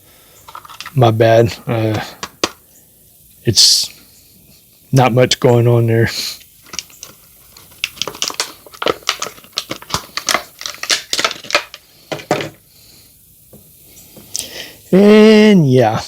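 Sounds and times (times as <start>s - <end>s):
packaging crinkling: 6.6s - 12.6s.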